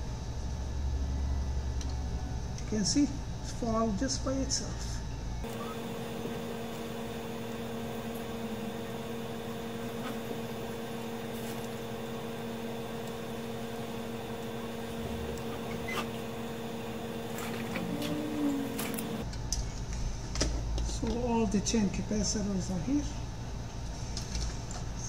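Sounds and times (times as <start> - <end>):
hot-air station blowing: 5.4 - 19.3.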